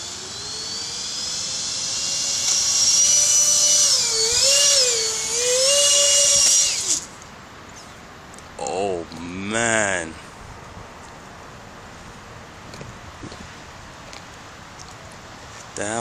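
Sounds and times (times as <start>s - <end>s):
electric motor whining: 0.0s - 7.2s.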